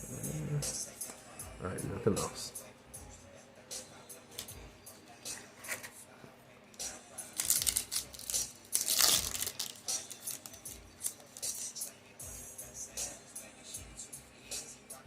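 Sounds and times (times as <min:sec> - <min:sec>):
foil pack tearing: 0:07.4 - 0:11.6
wrapper and cards rustling: 0:07.4 - 0:11.7.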